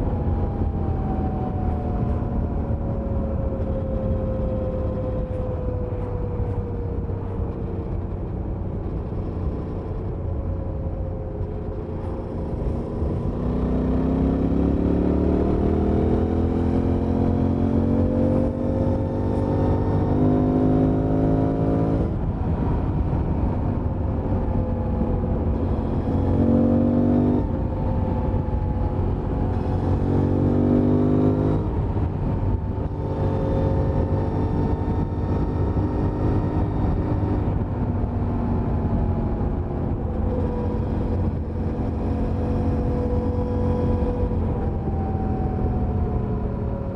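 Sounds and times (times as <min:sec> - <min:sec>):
wind noise: 0:00.0 - 0:46.9
motorcycle engine revving: 0:12.0 - 0:22.3, 0:25.4 - 0:37.7, 0:38.8 - 0:45.4.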